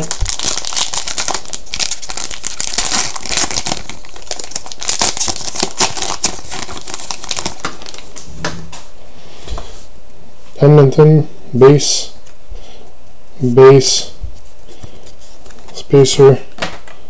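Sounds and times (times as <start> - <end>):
wrapper being torn and crinkled: 0.0 - 8.2.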